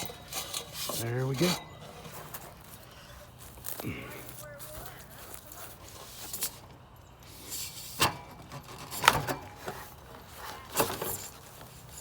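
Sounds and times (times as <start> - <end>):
rubbing and scraping: 0.0 - 3.2.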